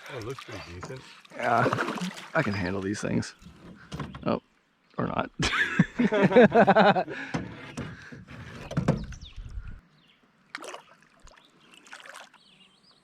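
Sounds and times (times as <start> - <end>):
water splashing: 0.0 - 3.4, 10.5 - 12.4.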